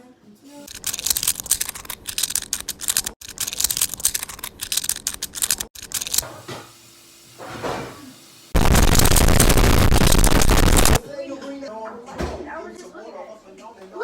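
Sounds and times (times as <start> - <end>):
rapid irregular clicking: 0.7 - 6.2, 8.6 - 11.0.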